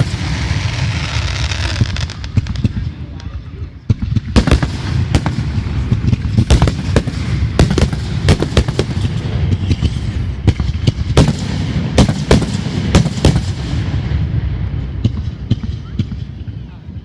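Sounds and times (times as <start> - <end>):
fireworks bangs: 0.0 - 17.0
low rumble: 1.0 - 11.2.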